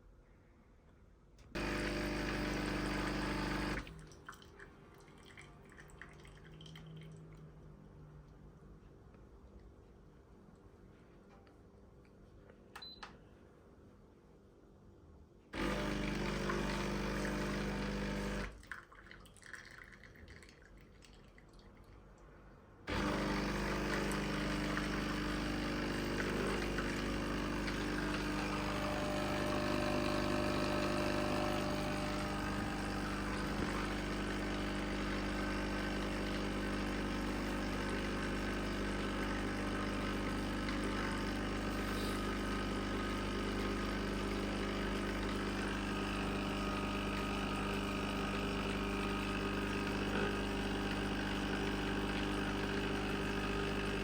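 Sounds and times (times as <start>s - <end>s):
coffee machine pump humming: 1.6s - 4.1s, 15.6s - 18.6s, 22.9s - 54.0s
coffee pouring into cup: 1.6s - 7.5s, 15.6s - 21.9s, 22.9s - 54.0s.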